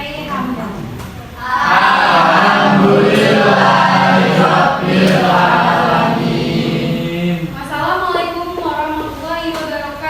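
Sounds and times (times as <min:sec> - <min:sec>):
students chanting in unison: 0:01.4 - 0:07.6.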